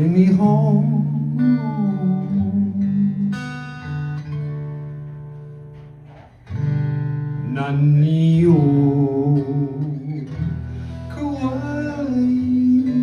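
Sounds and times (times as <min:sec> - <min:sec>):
acoustic guitar chords: 0:00.0 - 0:13.0
person singing: 0:10.9 - 0:13.0.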